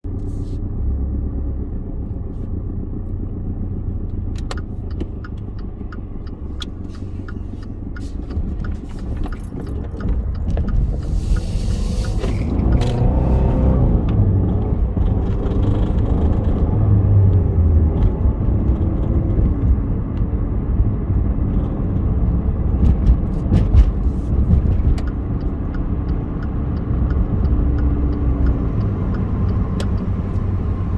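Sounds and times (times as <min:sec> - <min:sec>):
car engine accelerating: 0:00.1 - 0:30.9
regular clicking: 0:04.4 - 0:19.4, 0:23.4 - 0:30.9.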